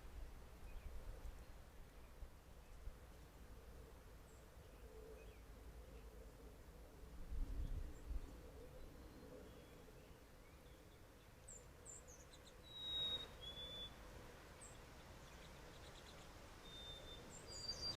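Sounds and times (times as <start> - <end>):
thin bird whistles: 12.6 - 14.0, 16.6 - 18.0
birds chirping: 14.6 - 18.0.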